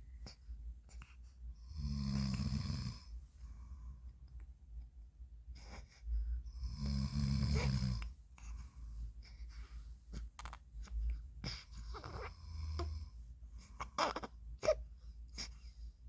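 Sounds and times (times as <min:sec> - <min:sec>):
man snoring: 0:01.7 - 0:03.1, 0:06.6 - 0:08.0.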